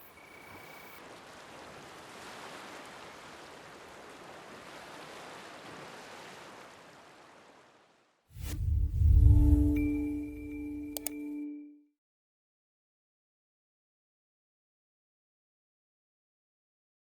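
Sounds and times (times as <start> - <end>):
sea surf washing: 1.0 - 7.9
deep boom: 8.4 - 10.2
music: 8.5 - 12.0.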